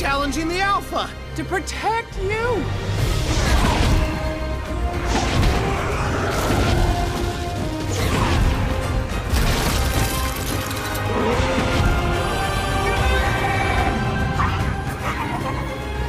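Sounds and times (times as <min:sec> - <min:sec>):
dramatic film score: 0:00.0 - 0:16.0.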